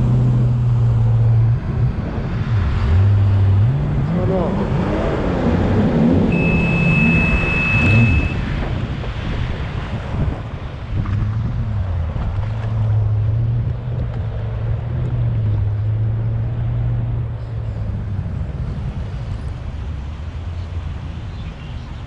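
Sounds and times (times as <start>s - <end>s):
watercraft engine droning: 0.0s - 11.0s
water noise: 0.0s - 13.2s
wind: 0.0s - 22.0s.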